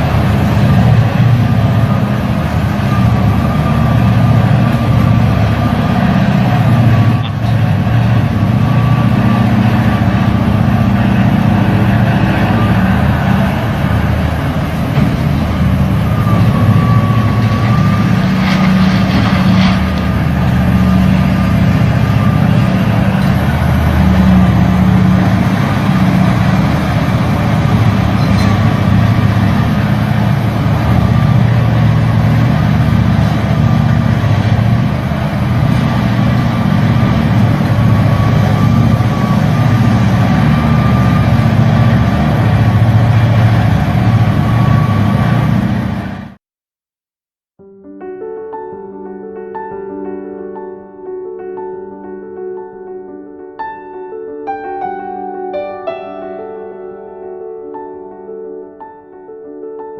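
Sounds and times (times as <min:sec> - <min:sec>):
diesel engine deep drone: 0:00.0 - 0:46.4.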